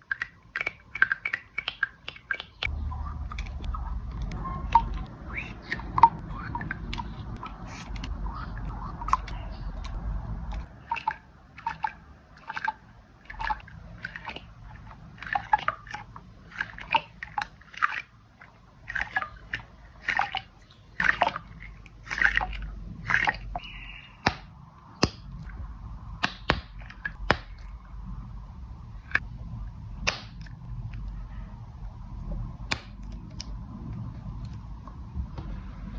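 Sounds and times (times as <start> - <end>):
pop-it toy bubbles popping: 0.1 - 3.6, 23.1 - 25.4, 26.2 - 27.7, 30.0 - 30.5, 32.7 - 33.5.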